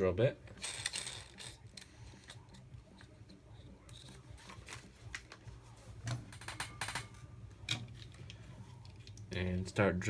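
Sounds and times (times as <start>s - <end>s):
small tools clicking and rattling: 0.5s - 5.3s, 6.1s - 9.2s.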